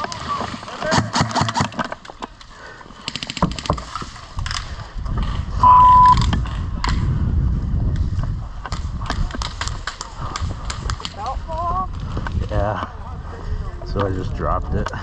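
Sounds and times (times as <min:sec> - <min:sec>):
censor bleep: 0:05.6 - 0:06.3.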